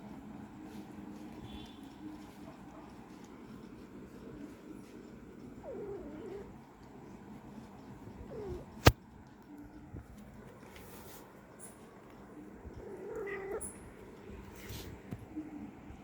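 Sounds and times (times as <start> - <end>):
cats meowing: 5.6 - 6.7, 7.7 - 8.8, 12.7 - 14.2.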